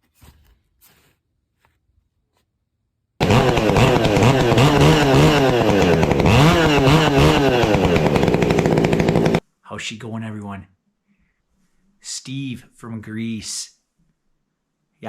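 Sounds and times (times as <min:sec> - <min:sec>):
chainsaw revving: 0:03.2 - 0:09.4.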